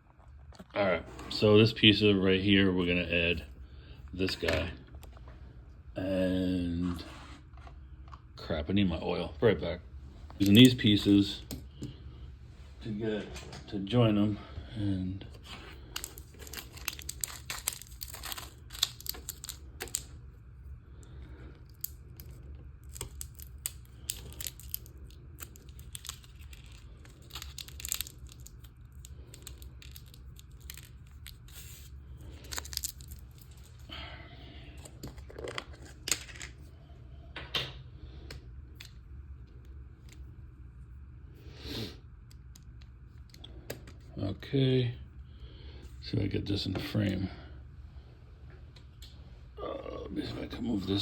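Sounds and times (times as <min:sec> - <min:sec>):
steady low hum: 0:00.0 - 0:51.0
plastic parts clicking and scraping: 0:15.3 - 0:20.2, 0:21.6 - 0:33.9, 0:34.8 - 0:36.6.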